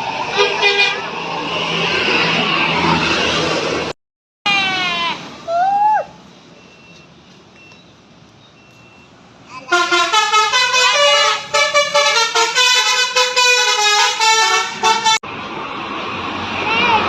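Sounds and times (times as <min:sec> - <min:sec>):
bus musical horn melody: 0:00.3 - 0:01.2, 0:09.7 - 0:15.3.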